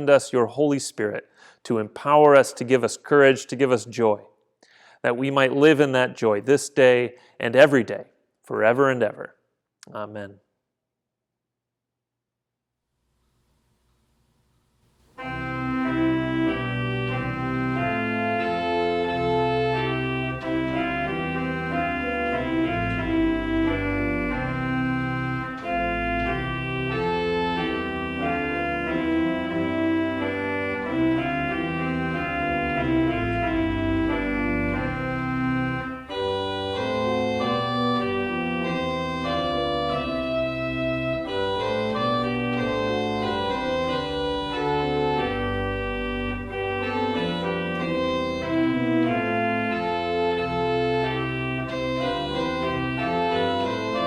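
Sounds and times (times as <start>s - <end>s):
organ playing chords: 15.0s - 54.0s.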